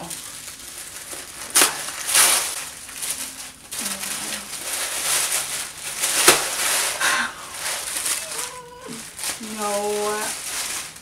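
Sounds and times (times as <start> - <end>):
wrapping paper rustling: 0.0 - 11.0.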